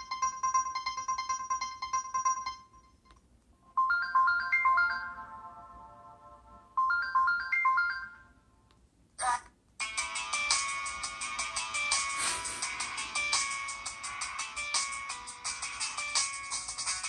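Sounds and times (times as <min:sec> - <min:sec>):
fast repeating electronic ringtone: 0:00.0 - 0:03.0, 0:03.8 - 0:05.4, 0:06.8 - 0:08.4
rising chime-like ringtone notes: 0:03.8 - 0:05.6, 0:06.8 - 0:08.3.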